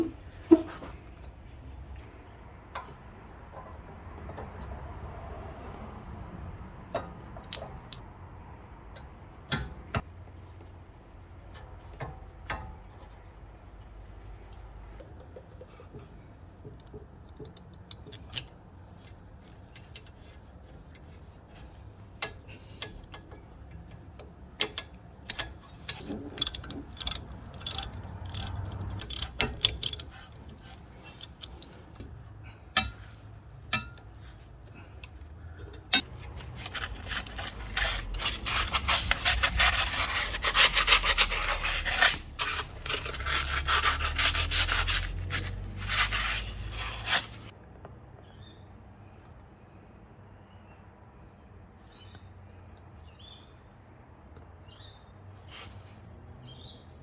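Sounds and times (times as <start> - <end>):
metal parts clicking and tapping: 16.6 - 18.6, 22.2 - 34.2, 35.0 - 47.5
rapid scraping and rubbing: 36.0 - 47.5.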